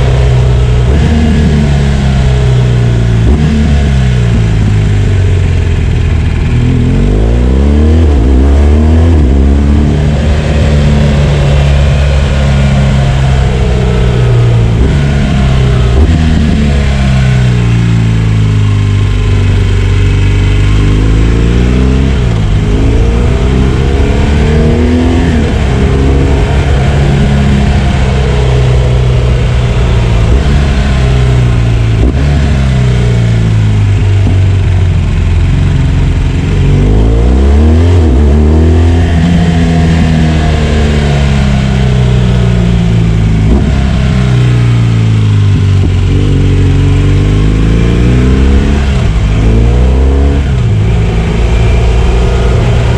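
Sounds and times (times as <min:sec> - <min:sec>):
motorcycle engine revving: 0:00.0 - 0:52.9.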